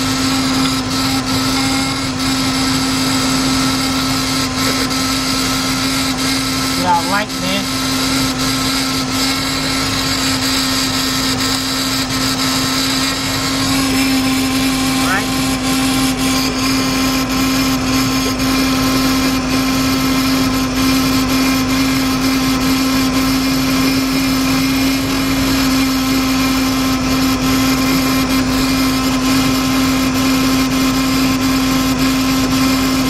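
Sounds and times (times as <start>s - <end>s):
car engine idling rough: 0.0s - 7.6s
steady whine: 0.0s - 33.0s.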